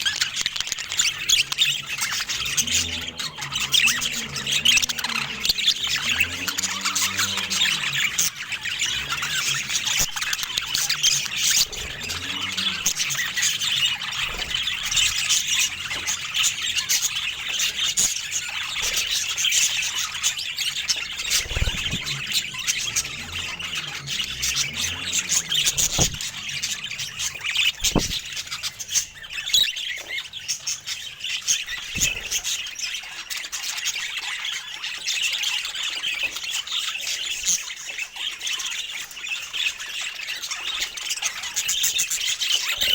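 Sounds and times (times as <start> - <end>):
budgerigars chirping and chattering: 0.0 - 42.9
short low thuds: 27.8 - 28.3.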